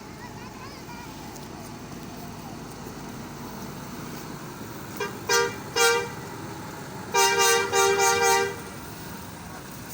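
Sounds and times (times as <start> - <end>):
multi-tone bus air horn: 5.0 - 6.2, 7.1 - 8.8.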